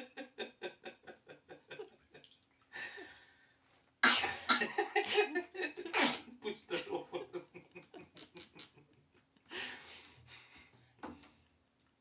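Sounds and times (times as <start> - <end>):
rhythmic pulsing laughter: 0.0 - 2.2
breath: 2.7 - 3.6, 9.5 - 11.0.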